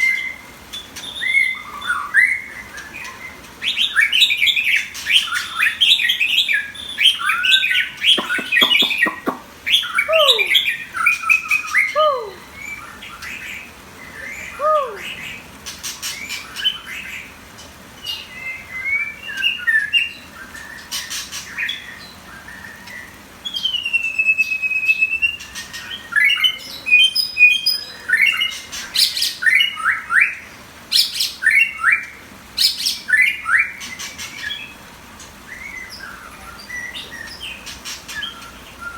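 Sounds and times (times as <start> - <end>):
songbird singing: 5.2 - 13.4, 14.0 - 15.3.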